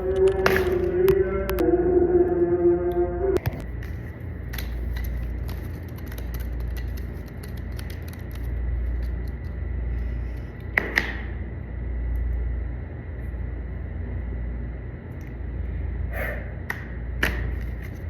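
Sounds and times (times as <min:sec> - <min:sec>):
faint high tone: 0:00.0 - 0:03.4
low rumble: 0:00.0 - 0:03.9.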